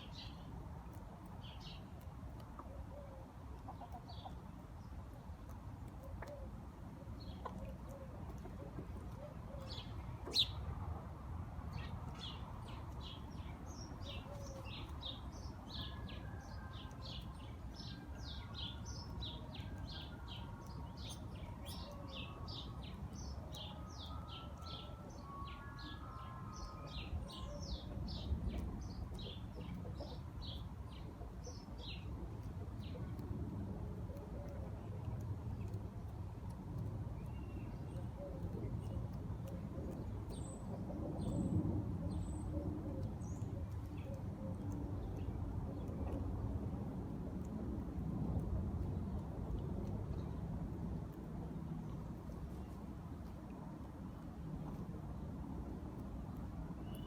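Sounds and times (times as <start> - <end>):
birds chirping: 9.2 - 10.7.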